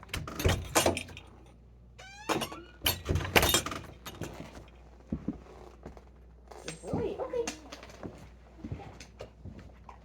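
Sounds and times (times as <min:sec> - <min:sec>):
door squeak: 0:02.0 - 0:03.0.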